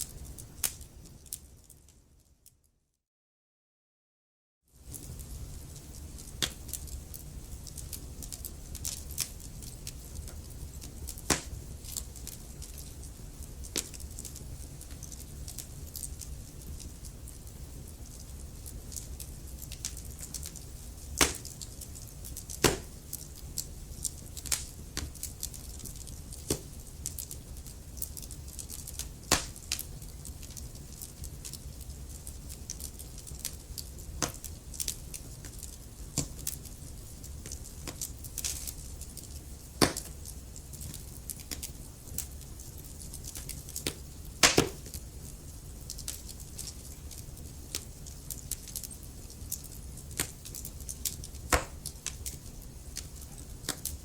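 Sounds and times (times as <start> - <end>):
logs crackling and popping: 0.0 - 1.9, 4.8 - 54.0
rumble of flames: 4.8 - 54.0.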